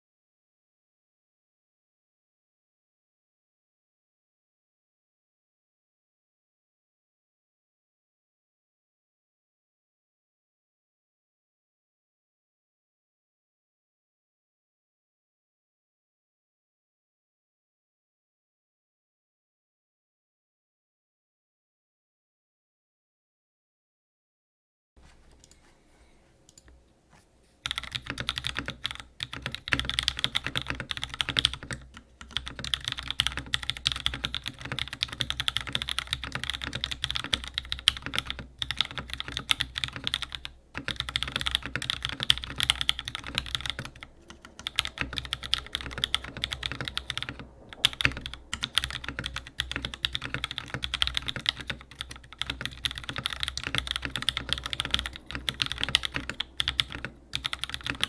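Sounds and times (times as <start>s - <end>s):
fast mechanical keyboard typing: 27.6s - 58.0s.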